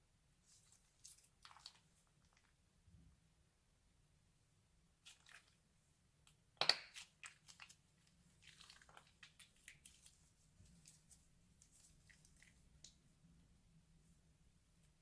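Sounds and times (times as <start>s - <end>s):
slime squishing: 0.6s - 2.6s, 5.0s - 5.6s, 6.6s - 13.1s.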